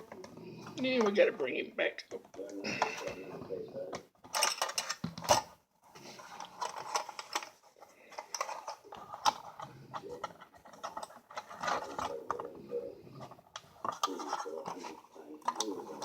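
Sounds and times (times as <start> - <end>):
small metal parts clicking and scraping: 4.3 - 5.4.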